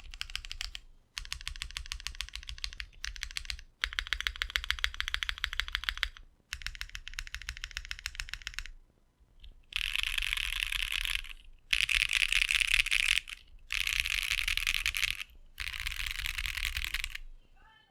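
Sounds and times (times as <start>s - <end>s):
mechanical keyboard key clatter: 0.0s - 8.7s, 9.8s - 17.2s.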